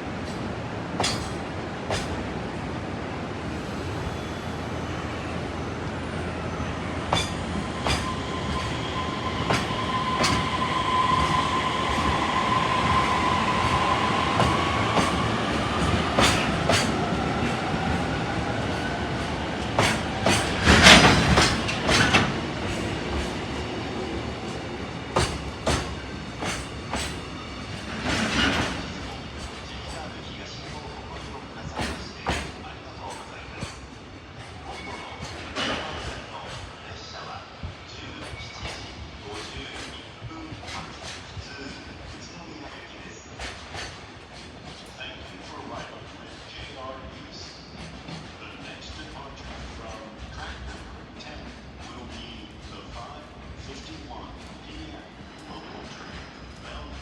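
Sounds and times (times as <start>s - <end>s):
train rail rumble: 0.0s - 57.0s
wheels clacking over rail joints: 0.2s - 2.3s, 7.0s - 8.2s, 18.7s - 23.6s, 24.5s - 36.7s
drawn-out rising squeal: 3.1s - 25.1s.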